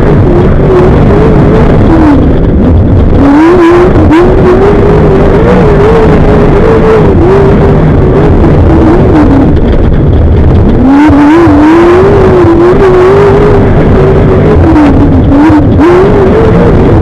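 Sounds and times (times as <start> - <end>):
engine revving hard: 0.0 - 17.0.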